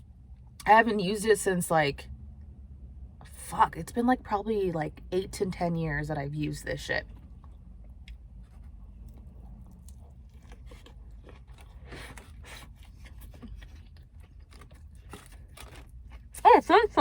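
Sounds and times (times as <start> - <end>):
steady low hum: 0.0 - 17.0
person chewing food: 7.1 - 16.4.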